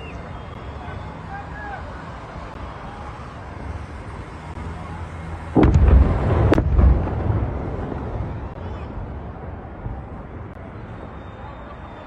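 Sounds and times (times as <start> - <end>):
explosion boom with cracks: 5.6 - 10.5
low rumble: 5.6 - 10.8.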